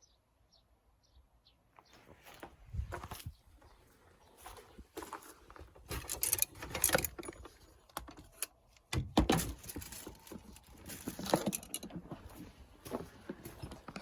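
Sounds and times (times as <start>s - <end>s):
small hard objects clinking: 9.6s - 12.4s.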